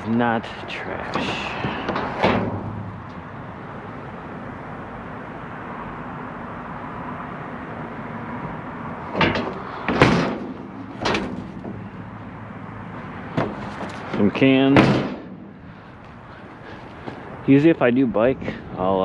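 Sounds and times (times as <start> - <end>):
sharp knocks: 1.1 - 3.0, 8.4 - 12.0, 13.3 - 15.6.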